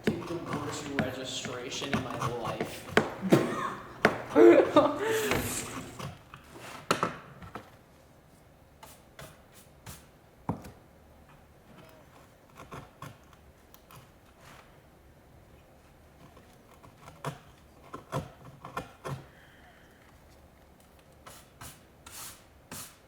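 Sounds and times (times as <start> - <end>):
light taps of tools and paper: 0.0 - 6.1.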